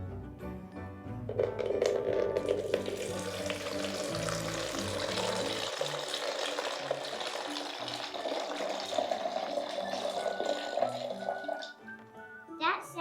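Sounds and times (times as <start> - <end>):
background music: 0.0 - 13.0
water pouring with rushing hiss: 2.4 - 11.8.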